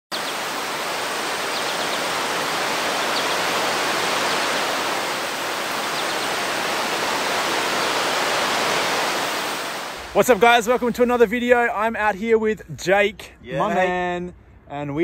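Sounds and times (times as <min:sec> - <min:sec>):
rushing whitewater: 0:00.1 - 0:11.3.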